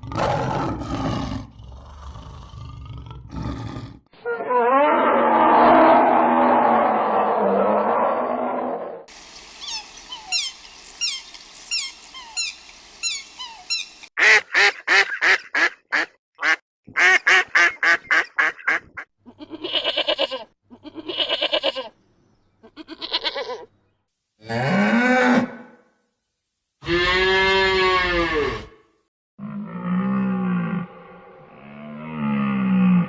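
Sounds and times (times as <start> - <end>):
high falling bird chirps: 9.1 - 14.1
low drawn-out bird call: 9.1 - 14.1
harsh waterfowl calls: 9.1 - 18.9.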